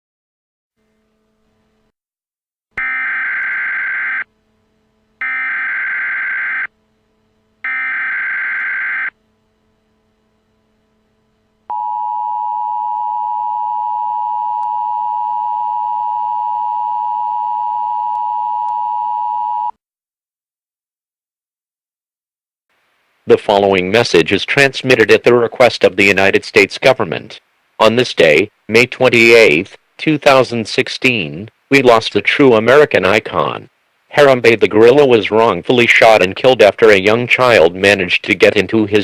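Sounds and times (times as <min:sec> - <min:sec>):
two-tone attention signal: 0:02.8 - 0:04.2, 0:11.7 - 0:19.7.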